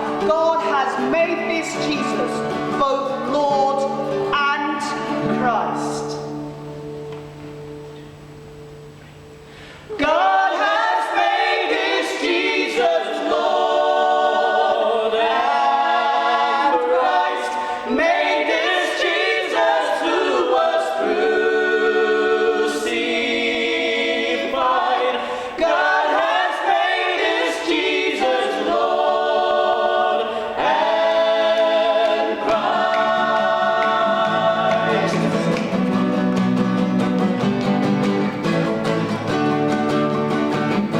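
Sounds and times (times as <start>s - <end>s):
unaccompanied choir singing: 0.0s - 1.2s, 9.9s - 36.6s.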